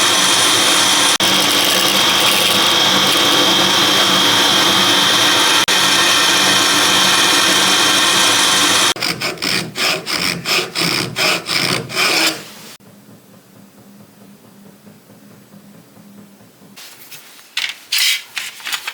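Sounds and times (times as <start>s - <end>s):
power tool grinding steel: 0.0s - 12.8s
rhythmic tool strokes on steel: 0.2s - 5.7s, 8.4s - 12.8s.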